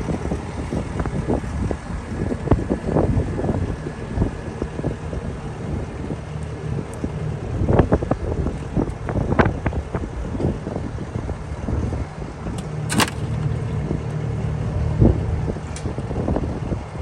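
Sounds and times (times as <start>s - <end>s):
skid steer engine running: 12.6s - 15.4s
sharp bang: 12.9s - 13.5s
knocks and clunks: 12.9s - 13.8s.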